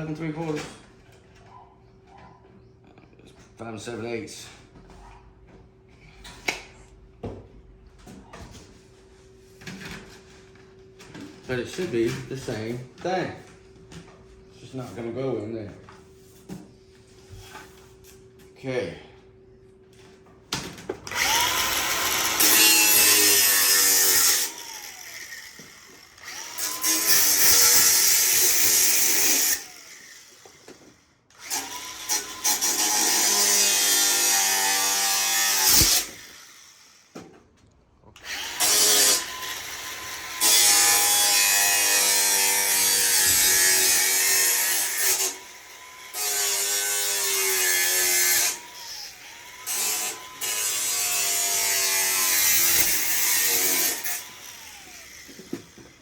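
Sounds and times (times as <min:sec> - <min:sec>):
power tool motor whining: 0:21.1 - 0:37.1, 0:38.2 - 0:56.0.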